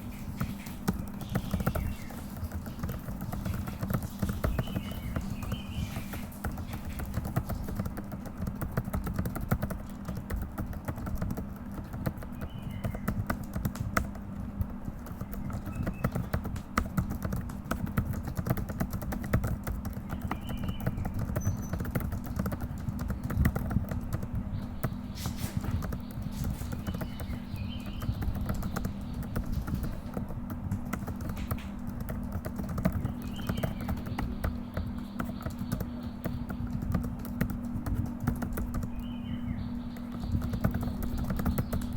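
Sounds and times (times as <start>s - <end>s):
fast typing on keyboard: 0.0s - 41.9s
steady low hum: 0.0s - 41.9s.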